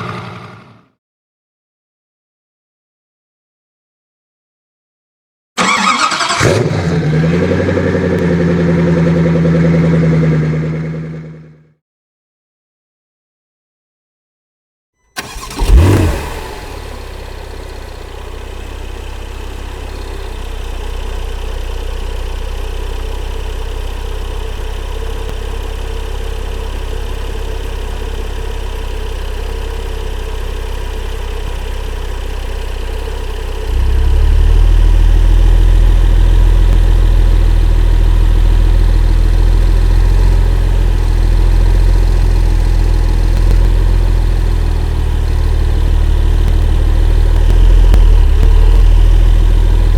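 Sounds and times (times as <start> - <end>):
sports car engine starting: 5.6 - 11.4, 15.2 - 49.9
car engine idling: 7.2 - 11.1, 15.2 - 49.9.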